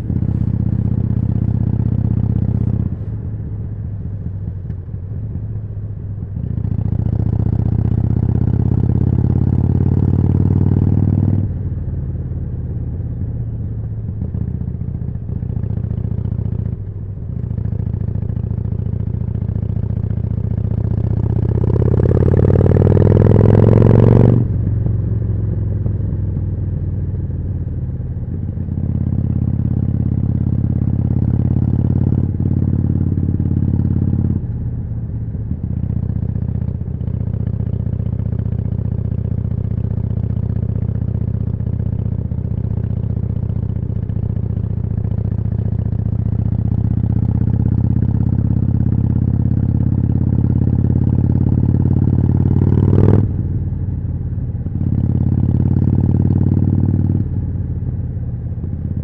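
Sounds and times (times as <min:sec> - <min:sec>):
motorcycle engine revving: 0:00.0 - 0:03.1, 0:06.4 - 0:11.6, 0:17.4 - 0:25.9, 0:35.6 - 0:53.8, 0:54.6 - 0:57.4.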